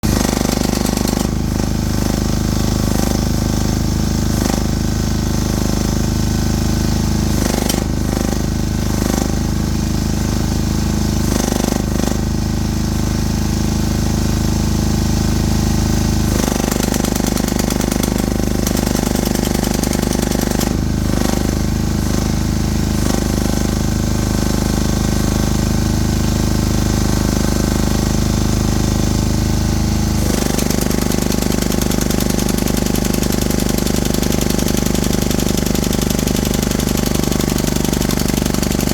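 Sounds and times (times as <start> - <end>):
hydraulic breaker hammering: 0.0 - 5.8, 7.3 - 9.4, 16.3 - 25.1, 27.0 - 38.9.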